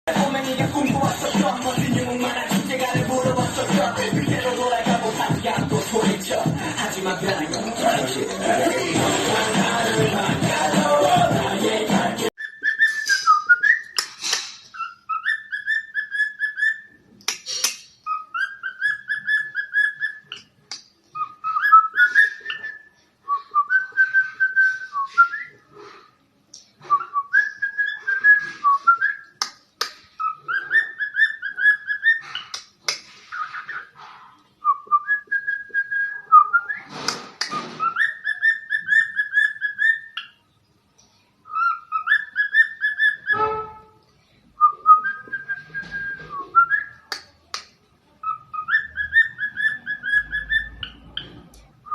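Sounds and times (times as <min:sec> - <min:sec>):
cockatiel whistling: 0:12.4 - 0:14.1, 0:14.7 - 0:17.0, 0:18.0 - 0:20.5, 0:21.2 - 0:25.6, 0:30.2 - 0:32.6, 0:34.6 - 0:40.4, 0:41.5 - 0:43.8, 0:48.2 - 0:51.9.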